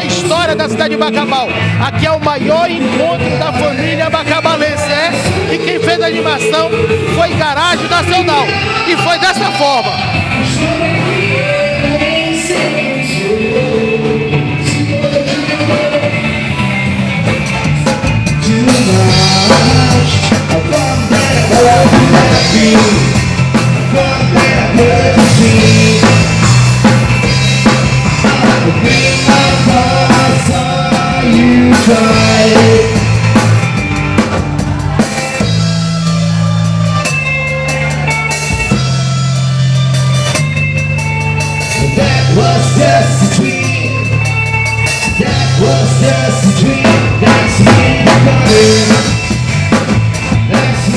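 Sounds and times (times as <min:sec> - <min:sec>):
bass guitar: 0:00.0 - 0:50.9
drum kit: 0:00.0 - 0:50.9
live rock band playing: 0:00.0 - 0:50.9
person singing: 0:07.8 - 0:17.0, 0:18.3 - 0:33.6, 0:41.6 - 0:50.9.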